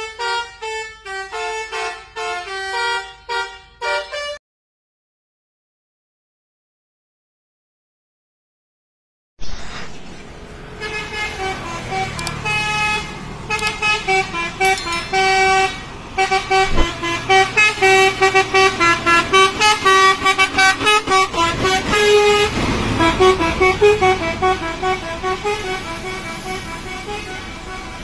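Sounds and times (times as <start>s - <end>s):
multi-tone air horns melody: 0.0s - 4.4s, 11.0s - 28.0s.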